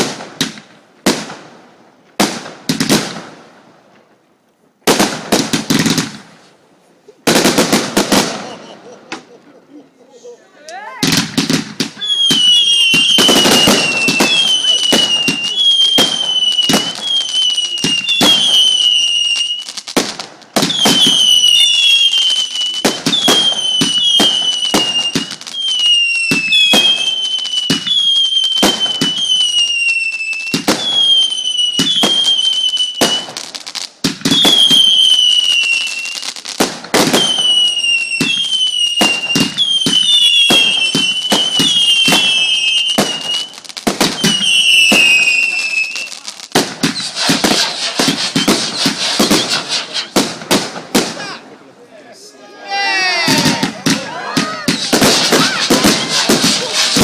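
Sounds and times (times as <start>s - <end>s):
firework bangs and pops: 0.0s - 6.6s, 7.2s - 9.3s, 11.0s - 51.4s, 53.2s - 57.0s
firework falling whistles: 8.0s - 9.3s, 11.0s - 33.5s, 34.2s - 51.2s, 53.2s - 57.0s.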